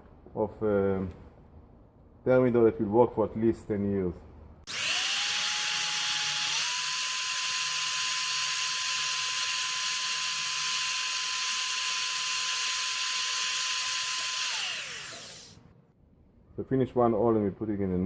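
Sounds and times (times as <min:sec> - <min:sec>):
electric drill whining: 0:04.7 - 0:15.6.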